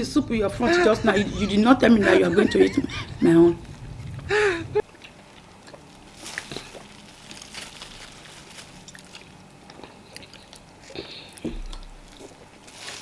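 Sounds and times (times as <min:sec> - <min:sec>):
wet chewing smacks: 0:08.9 - 0:12.6.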